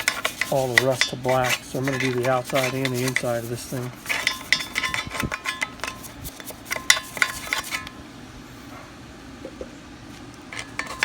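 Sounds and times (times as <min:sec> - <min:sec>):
metallic clinks and scraping: 0:00.0 - 0:07.9, 0:10.5 - 0:11.0.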